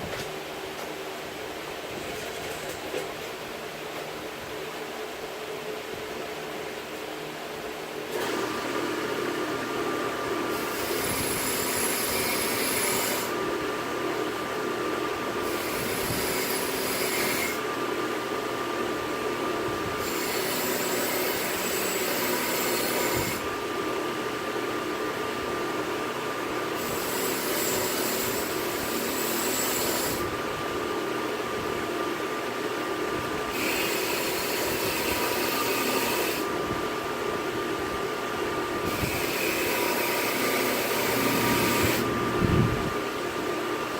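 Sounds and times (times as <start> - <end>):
belt grinder whine: 8.1 - 17.7, 19.1 - 31.1, 33.4 - 36.7, 38.7 - 42.8
grinding hiss on steel: 10.6 - 13.4, 15.4 - 17.6, 20.0 - 23.5, 26.8 - 30.3, 33.5 - 36.5.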